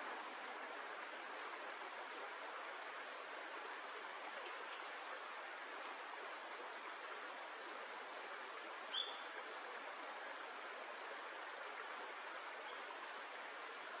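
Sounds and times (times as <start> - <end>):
short high bird chirp: 8.9 - 9.2.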